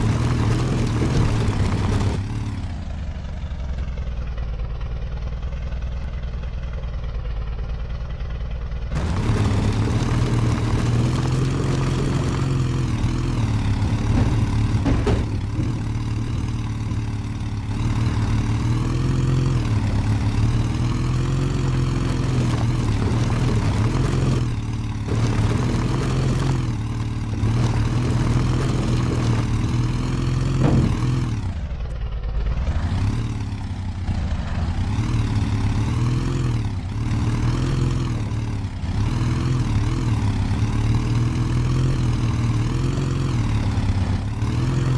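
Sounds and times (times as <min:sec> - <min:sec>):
off-road vehicle engine revving: 0:00.0 - 0:02.7, 0:08.9 - 0:44.9
brief knocks: 0:30.6 - 0:31.5.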